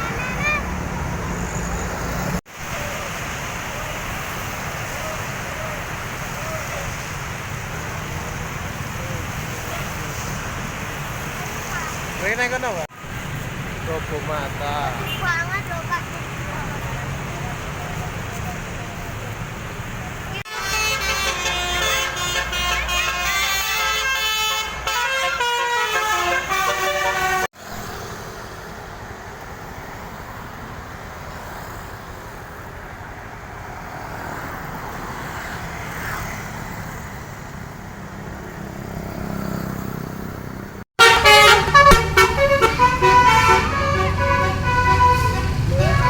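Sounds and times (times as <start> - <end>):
traffic noise: 0.0 - 46.0
multi-trumpet horn melody: 20.5 - 27.5, 41.0 - 46.0.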